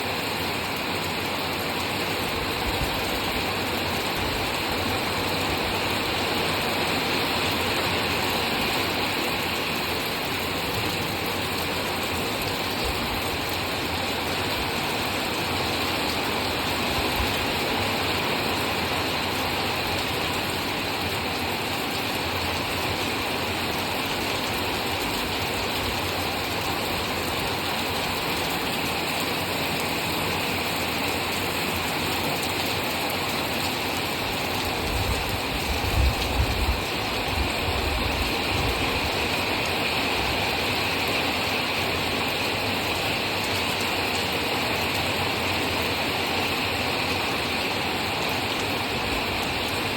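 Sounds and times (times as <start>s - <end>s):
rain falling: 0.0s - 49.9s.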